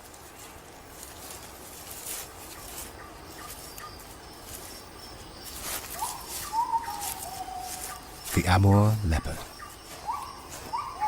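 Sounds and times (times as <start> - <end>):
soft rustles: 0.0 - 8.4, 9.6 - 11.0
faint bird chirps: 2.6 - 11.0.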